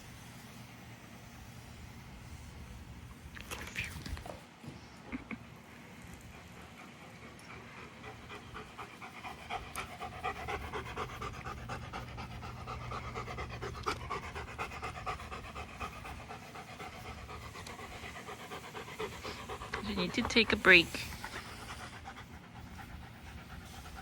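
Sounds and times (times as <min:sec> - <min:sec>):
dog panting: 0:05.8 - 0:24.0.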